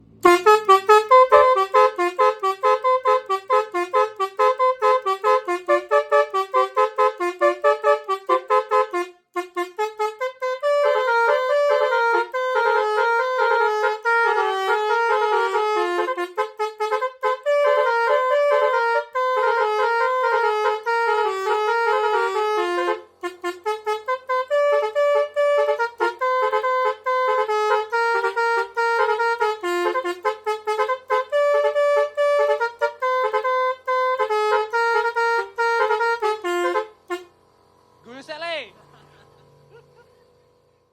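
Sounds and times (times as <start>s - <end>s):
musical bus horn melodies: 0.0s - 40.3s.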